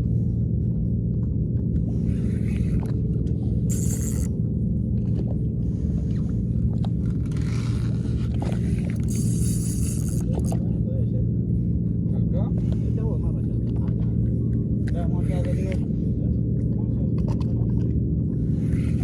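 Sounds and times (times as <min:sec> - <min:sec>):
boat engine humming: 0:07.8 - 0:10.6.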